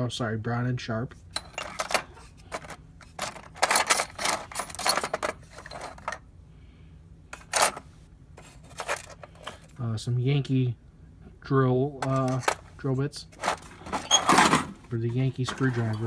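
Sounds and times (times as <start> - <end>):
metal tools clinking in drawer: 1.3 - 6.2, 7.4 - 7.8, 8.4 - 9.7, 12.0 - 12.7, 13.4 - 14.8, 15.4 - 16.0.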